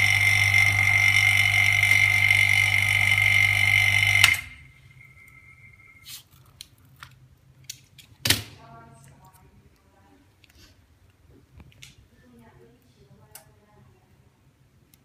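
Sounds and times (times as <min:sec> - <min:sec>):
electric motor humming with whine: 0:00.0 - 0:06.0
motor switch click: 0:03.7 - 0:04.6.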